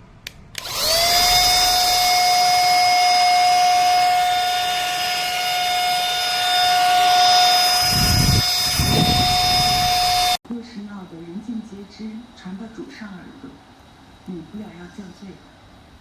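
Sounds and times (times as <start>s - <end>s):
handheld vacuum cleaner whine: 0.6s - 10.4s.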